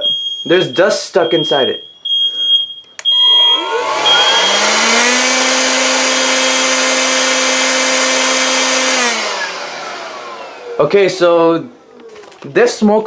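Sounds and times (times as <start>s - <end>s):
smoke alarm high beep: 0.0s - 5.0s
electric blower motor whine: 3.1s - 11.0s.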